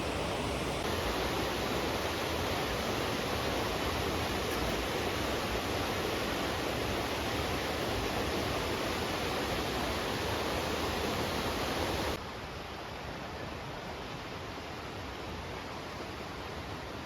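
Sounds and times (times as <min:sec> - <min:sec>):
waterfall rushing: 0:00.0 - 0:12.2.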